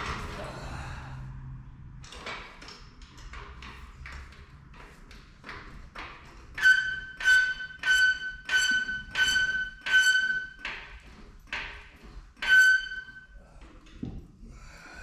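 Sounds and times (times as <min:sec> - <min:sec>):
rhythmic scraping with high squeak: 0:06.3 - 0:11.2, 0:12.2 - 0:13.4.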